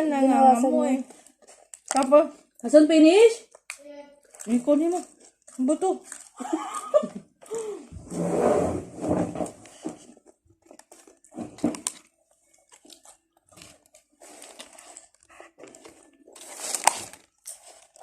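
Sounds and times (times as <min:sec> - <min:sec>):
person chewing crunchy food: 0:03.5 - 0:07.9, 0:10.1 - 0:18.0.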